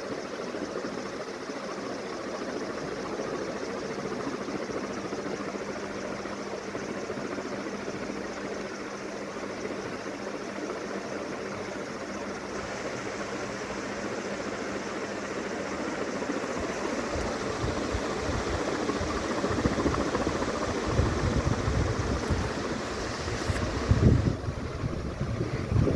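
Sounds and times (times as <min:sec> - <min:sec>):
ceiling fan air rush: 0:00.0 - 0:25.9
wind gusts on microphone: 0:16.6 - 0:25.9.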